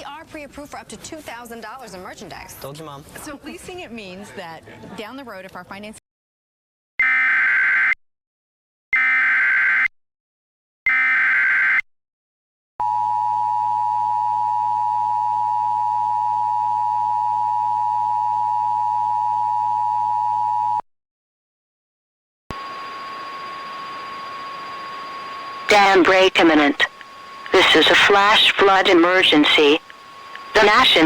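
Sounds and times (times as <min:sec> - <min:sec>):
screeching digital data tones: 0:22.5 - 0:31.0
steady tone: 0:22.5 - 0:31.0.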